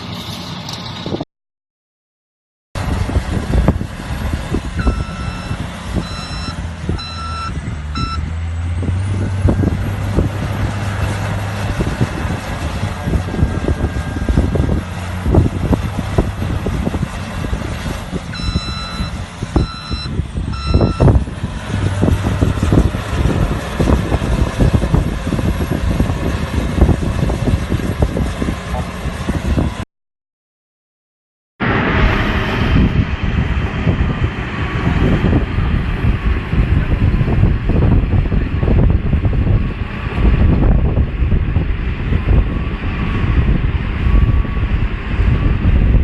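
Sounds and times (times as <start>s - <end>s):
engine rumble: 0.0s - 1.2s, 2.8s - 29.8s, 31.6s - 46.0s
reversing alarm beeping: 4.8s - 8.3s, 18.3s - 21.2s.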